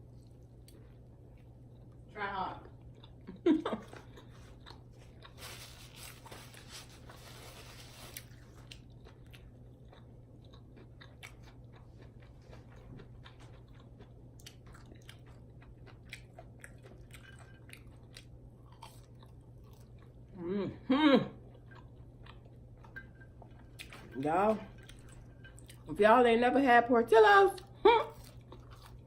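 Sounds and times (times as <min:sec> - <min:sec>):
person chewing food: 0:00.0 - 0:07.2, 0:07.9 - 0:20.4, 0:21.4 - 0:25.9, 0:27.6 - 0:29.0.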